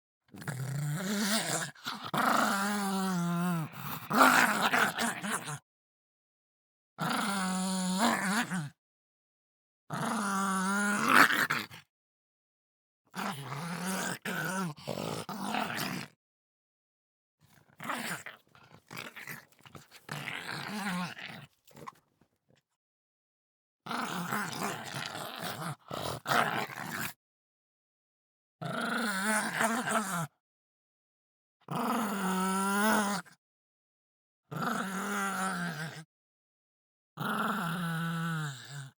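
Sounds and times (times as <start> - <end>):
dog roaring: 17.8 - 19.4
dog growling: 17.8 - 22.0.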